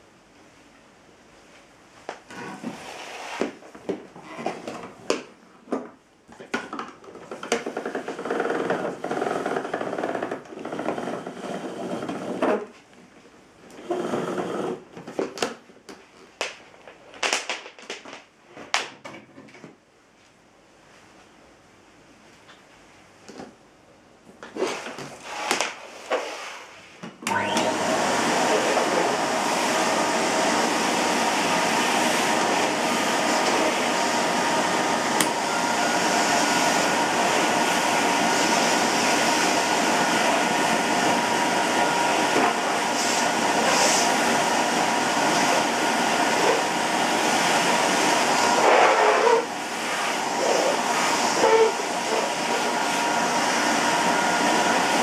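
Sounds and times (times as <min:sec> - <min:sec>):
vacuum cleaner running: 0:02.4 - 0:03.6, 0:07.6 - 0:12.4, 0:24.6 - 0:55.0.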